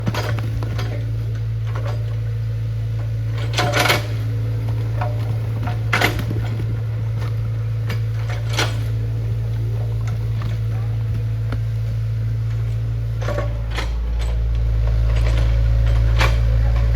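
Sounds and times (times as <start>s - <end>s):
low machine hum: 0.0s - 16.9s
metallic clanks: 12.5s - 16.9s.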